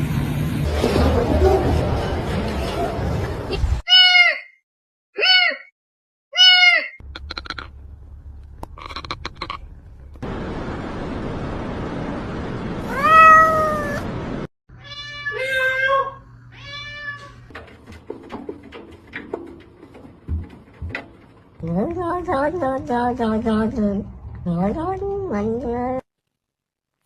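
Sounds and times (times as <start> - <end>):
cat meowing: 3.9 - 4.5, 6.4 - 7.6, 12.8 - 14.0, 14.7 - 17.4.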